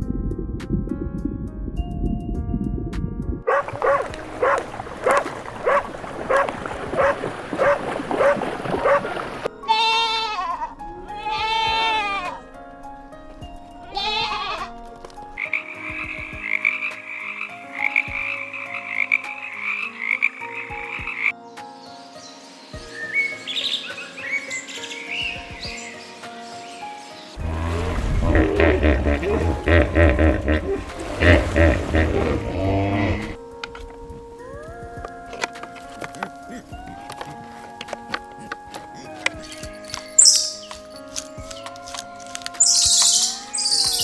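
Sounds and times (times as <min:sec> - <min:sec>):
soft background music: 0:00.0 - 0:44.0
animal calls: 0:03.5 - 0:10.0, 0:27.4 - 0:33.4, 0:39.0 - 0:41.8, 0:42.6 - 0:44.0.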